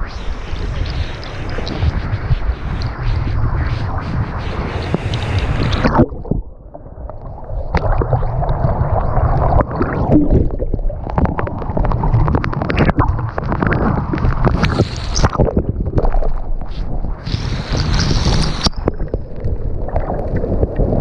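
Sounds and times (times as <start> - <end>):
wind buffeting microphone: 0.0 - 6.5
gurgling rushing water: 0.0 - 21.0.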